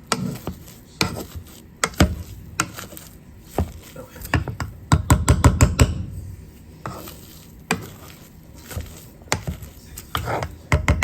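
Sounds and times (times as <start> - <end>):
potatoes squishing: 0.0 - 4.6, 6.4 - 10.6
utensil knocking against pot: 1.8 - 2.8, 3.6 - 6.1, 9.3 - 11.0.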